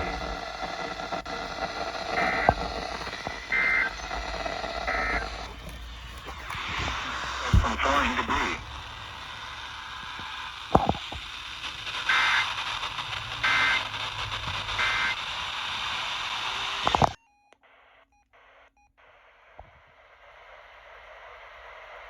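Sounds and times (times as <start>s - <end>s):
click: 0.0s - 8.5s, 9.3s - 17.2s
two-pitch data bursts: 0.0s - 17.1s
radio static hiss: 0.0s - 22.0s.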